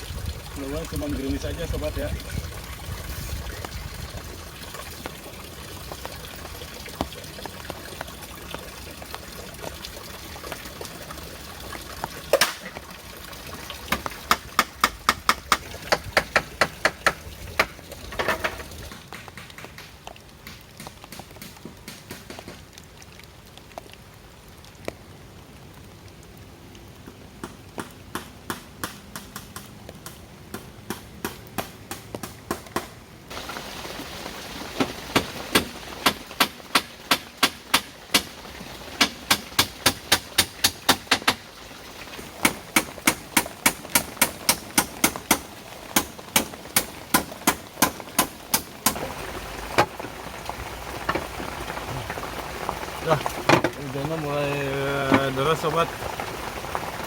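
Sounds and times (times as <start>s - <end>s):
water trickling: 0.0s - 28.5s, 33.3s - 57.0s
sharp rapid knocks: 39.0s - 41.4s.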